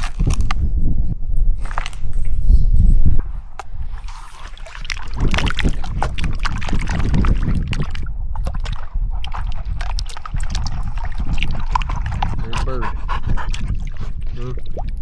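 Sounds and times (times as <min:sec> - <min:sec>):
wind rumbling on microphone: 0:00.0 - 0:15.0
water sloshing: 0:03.9 - 0:15.0.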